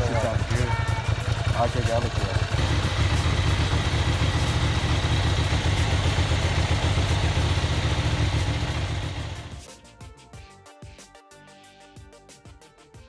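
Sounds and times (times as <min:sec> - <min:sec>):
motorcycle engine idling: 0:00.0 - 0:09.6.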